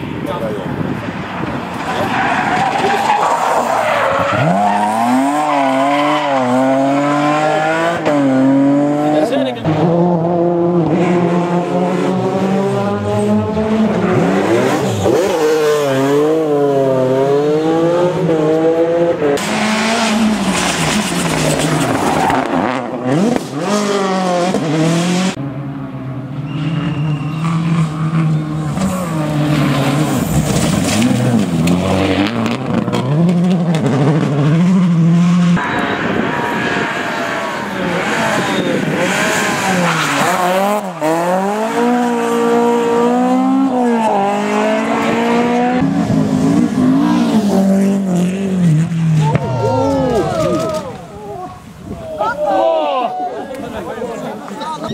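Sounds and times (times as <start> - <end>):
rally car engines revving: 0.0 - 52.0
tyre squeal: 26.4 - 29.2.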